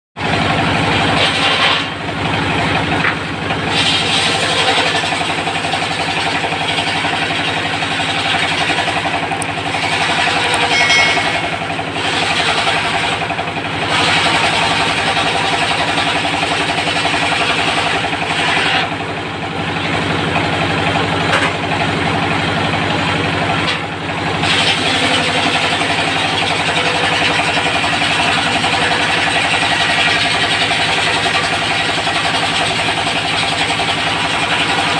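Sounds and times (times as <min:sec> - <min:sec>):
diesel engine drone: 0:00.2 - 0:34.9
saw blade cutting wood: 0:01.1 - 0:02.0, 0:07.1 - 0:19.0, 0:23.6 - 0:34.9.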